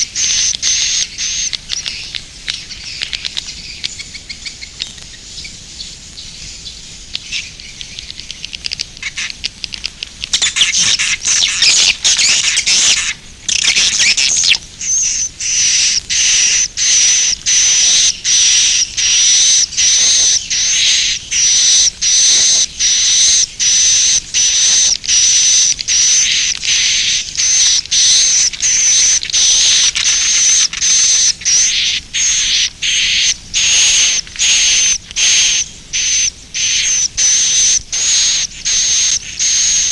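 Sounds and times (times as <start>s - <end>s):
swiftlets twittering: 10.3s - 39.9s.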